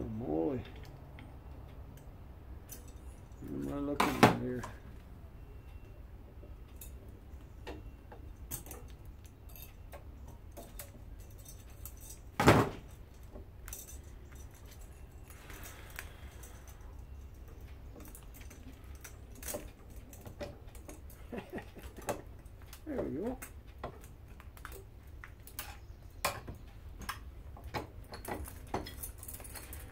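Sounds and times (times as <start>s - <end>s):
metal parts clinking: 8.3s - 22.8s, 28.0s - 29.9s.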